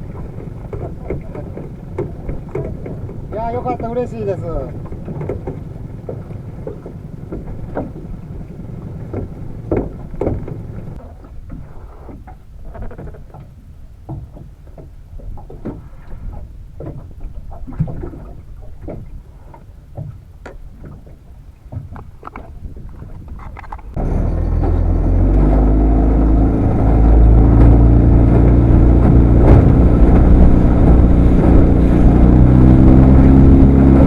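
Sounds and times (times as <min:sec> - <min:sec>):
knocks and thumps on boat: 0:00.0 - 0:34.0
water splashes: 0:00.0 - 0:34.0
low rumble: 0:23.9 - 0:34.0.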